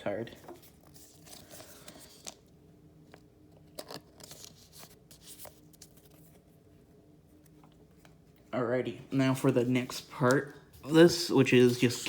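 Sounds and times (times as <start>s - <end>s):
faint steady hum: 0.0s - 12.0s
cardboard packaging rustling: 3.6s - 6.4s.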